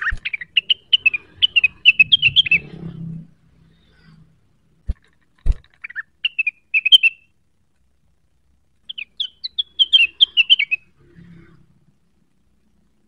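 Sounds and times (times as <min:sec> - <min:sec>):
songbird chattering: 0:00.0 - 0:02.8, 0:05.7 - 0:07.3, 0:08.9 - 0:10.9.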